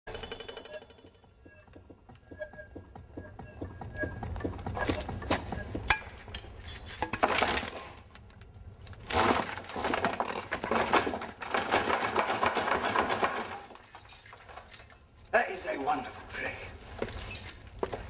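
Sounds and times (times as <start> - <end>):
metal clinking and clattering: 5.0 - 7.7, 12.0 - 15.4, 16.0 - 18.0.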